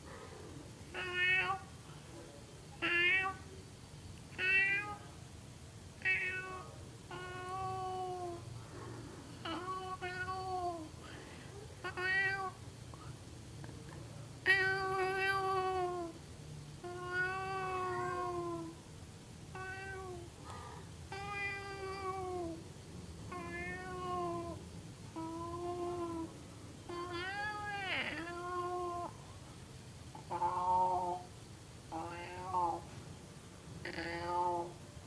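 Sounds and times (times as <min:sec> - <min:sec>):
animal meow-like calls: 0:30.2 - 0:31.3, 0:31.9 - 0:32.9.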